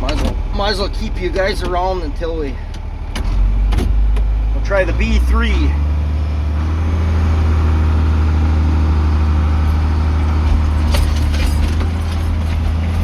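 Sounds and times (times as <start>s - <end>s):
rattling clanks: 0.0s - 4.4s, 9.7s - 13.0s
tractor engine running: 0.0s - 13.0s.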